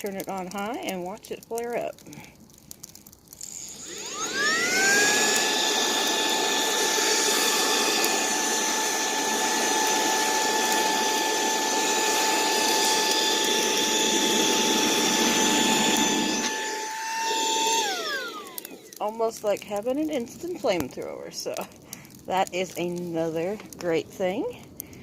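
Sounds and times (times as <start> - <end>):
handheld vacuum motor whine: 3.4 - 19.1.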